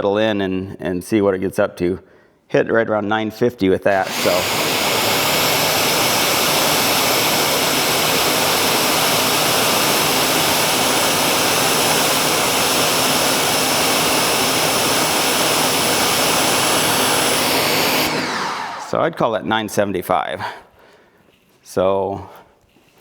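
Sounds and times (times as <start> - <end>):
motors and pumps humming: 3.9 - 19.0
water jet hissing: 3.9 - 19.0.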